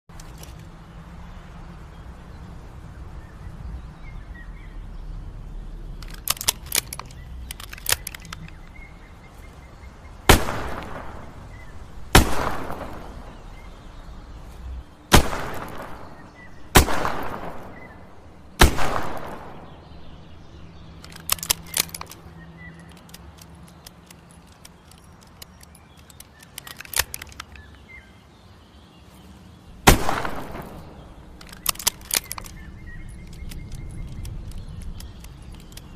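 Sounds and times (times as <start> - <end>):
gun action clicks: 6.0 - 8.9, 15.1 - 27.8, 29.9 - 35.9
revolver shots with ringing echo: 10.3 - 13.7, 15.1 - 20.3, 29.9 - 31.3.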